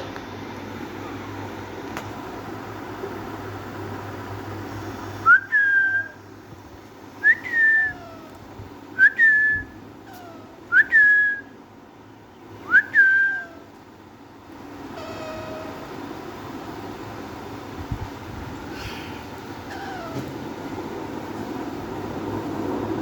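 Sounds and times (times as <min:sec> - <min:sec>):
parakeet whistled calls: 0:15.0 - 0:15.8.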